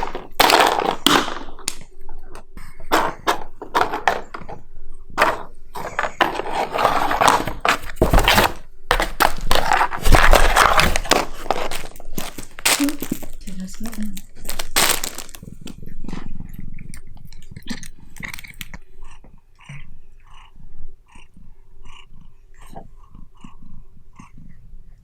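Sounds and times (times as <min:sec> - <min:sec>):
knocks and thumps: 0:05.2 - 0:15.7
packaging crinkling and rustling: 0:05.8 - 0:15.8, 0:18.1 - 0:18.7.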